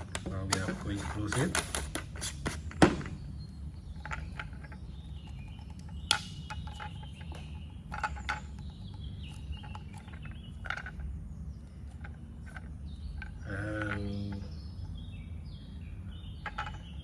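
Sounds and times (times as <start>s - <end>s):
plastic parts clicking and knocking: 0.0s - 3.3s, 3.9s - 11.2s, 16.4s - 17.0s.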